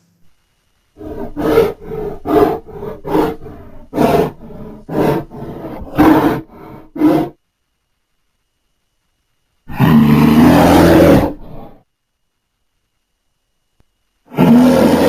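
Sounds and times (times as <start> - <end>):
monster growling roars: 1.0 - 7.4, 9.7 - 11.8, 14.3 - 15.0.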